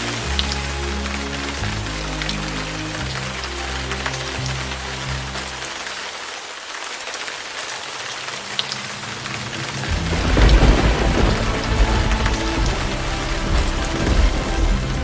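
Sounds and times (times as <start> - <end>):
steady rain falling: 0.0 - 15.0
thunder rumbling: 8.9 - 15.0.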